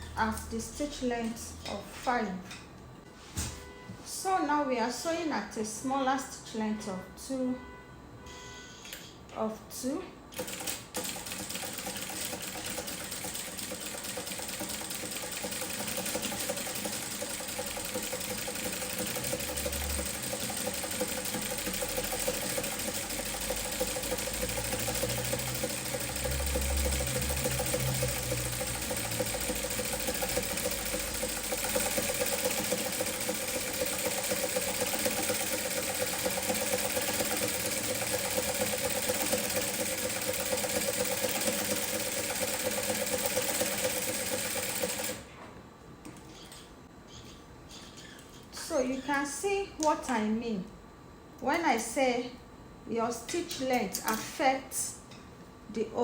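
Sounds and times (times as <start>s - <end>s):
sewing machine needle clatter: 10.4s - 45.2s.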